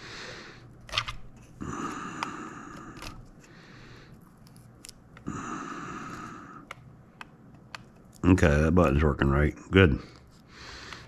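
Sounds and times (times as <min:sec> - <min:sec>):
plastic parts clicking: 0:00.8 - 0:01.5, 0:02.2 - 0:03.5, 0:06.6 - 0:08.2.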